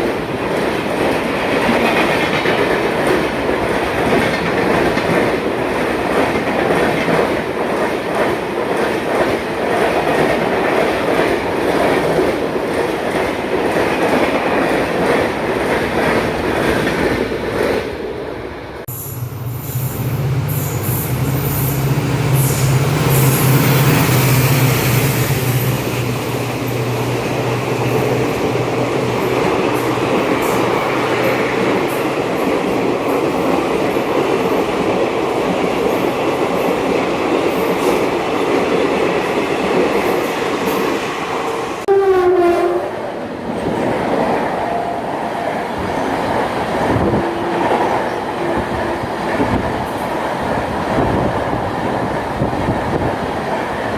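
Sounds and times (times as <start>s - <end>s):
train wheel clatter: 0.0s - 17.9s
train rumbling past: 0.0s - 53.9s.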